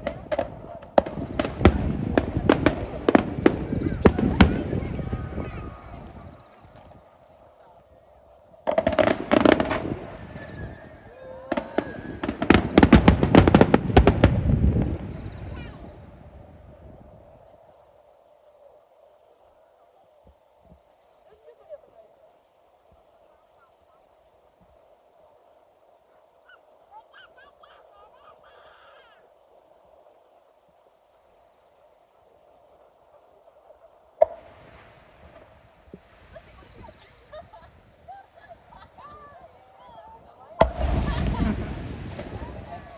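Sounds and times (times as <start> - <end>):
fireworks crackling bangs: 0.0 - 17.4, 33.5 - 42.9
faint background noise: 0.0 - 42.9.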